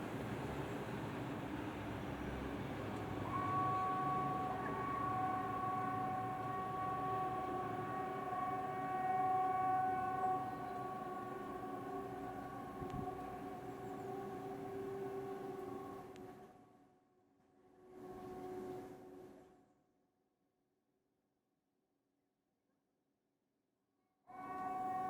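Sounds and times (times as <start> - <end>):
warning siren steady note: 3.2 - 15.8.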